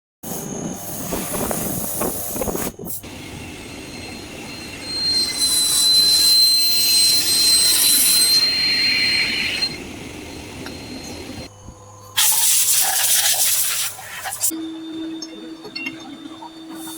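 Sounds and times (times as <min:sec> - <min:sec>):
high-pitched cutting squeal: 0:00.3 - 0:11.5.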